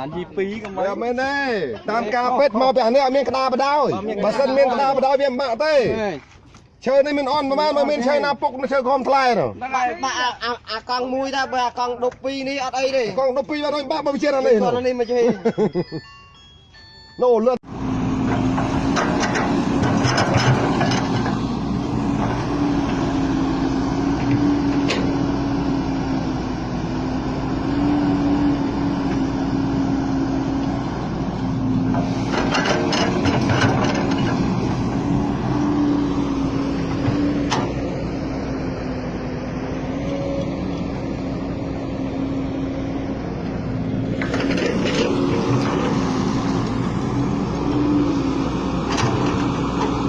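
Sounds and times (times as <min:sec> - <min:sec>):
diesel engine humming: 0:17.6 - 0:50.0
clattering bursts: 0:18.3 - 0:21.5, 0:31.9 - 0:34.8.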